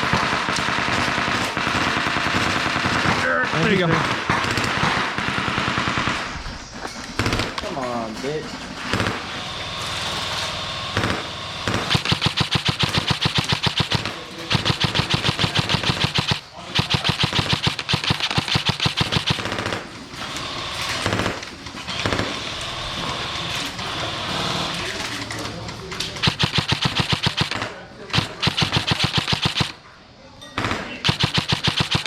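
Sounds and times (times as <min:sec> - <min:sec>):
airsoft rifles full-auto bursts: 0:00.0 - 0:06.4, 0:08.8 - 0:25.3, 0:26.1 - 0:29.9, 0:30.6 - 0:32.0.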